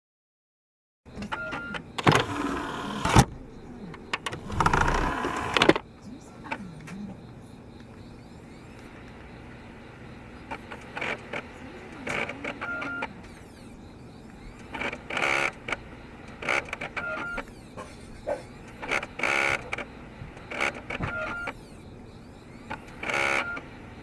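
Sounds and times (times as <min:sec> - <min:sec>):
disc drive clattering: 0:01.1 - 0:24.0
disc drive whine: 0:01.1 - 0:24.0.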